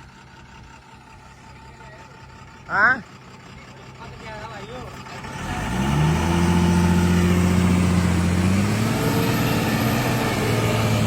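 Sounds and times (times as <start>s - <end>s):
diesel engine revving under load: 3.3s - 11.0s.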